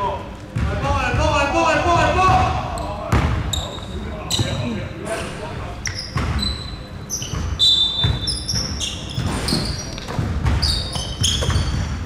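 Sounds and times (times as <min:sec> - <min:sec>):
players' voices: 0:00.0 - 0:07.2
sneakers squeaking on court floor: 0:02.3 - 0:12.0
basketball bouncing: 0:07.3 - 0:12.0.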